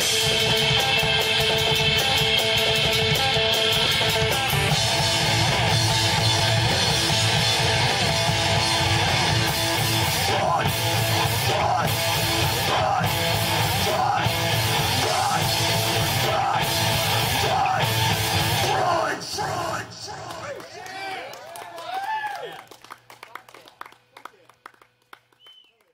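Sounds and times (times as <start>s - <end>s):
live rock band playing: 0.0s - 19.0s.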